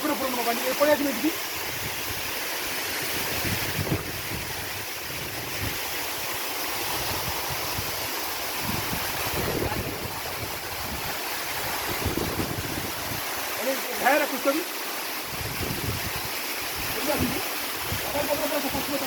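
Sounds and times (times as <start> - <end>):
waterfall rushing: 0.0 - 19.0
wind buffeting microphone: 3.0 - 13.4, 15.2 - 19.0.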